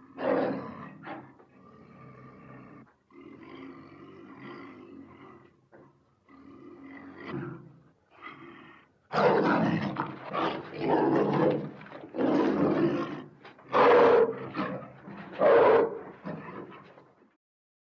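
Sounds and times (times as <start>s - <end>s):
big cat growls: 0.0s - 17.3s.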